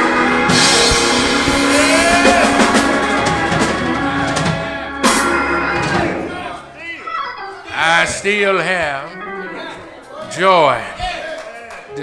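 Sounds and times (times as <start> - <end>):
drum kit: 0.0 - 6.3
church band playing: 0.0 - 6.8
cymbal crash: 0.5 - 5.5.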